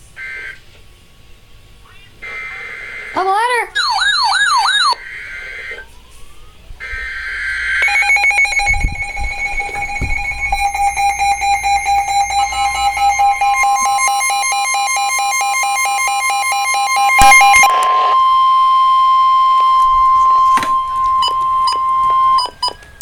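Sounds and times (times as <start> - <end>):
buzzy data burst: 7.6 - 22.1
electronic attention tone: 7.8 - 22.6.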